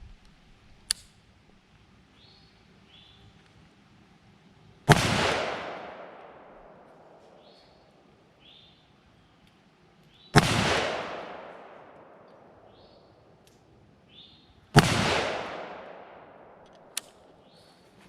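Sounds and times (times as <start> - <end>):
rifle shots with echo: 4.9 - 7.6, 10.4 - 12.9, 14.7 - 17.4.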